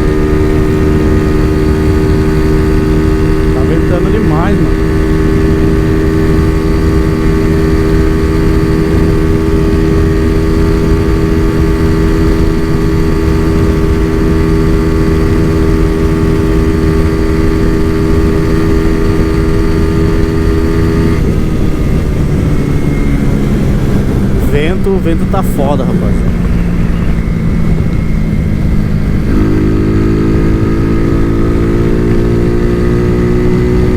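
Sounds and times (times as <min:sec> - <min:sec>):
motorcycle engine at high revs: 0:00.0 - 0:33.9
wind buffeting microphone: 0:17.7 - 0:33.9.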